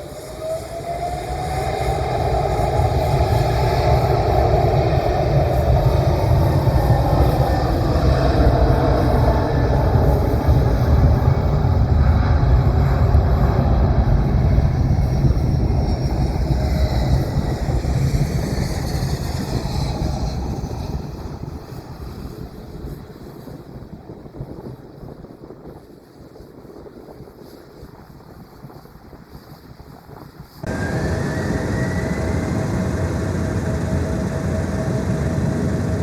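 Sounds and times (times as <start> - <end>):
jet aircraft engines rumbling: 0.0 - 29.5, 30.5 - 36.0.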